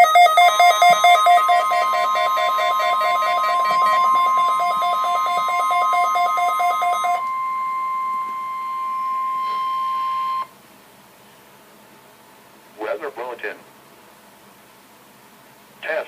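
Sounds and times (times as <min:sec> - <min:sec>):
lower alarm beeping rapidly: 0:00.0 - 0:10.5
steady warning alarm tone: 0:00.0 - 0:10.5.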